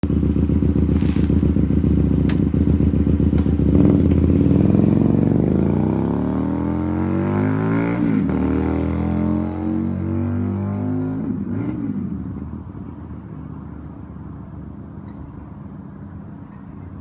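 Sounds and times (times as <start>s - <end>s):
motorcycle passing by: 0.0s - 12.8s.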